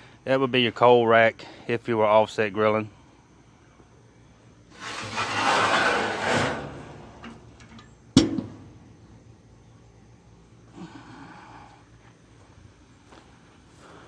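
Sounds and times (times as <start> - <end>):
metal sliding scrape: 4.7 - 7.9.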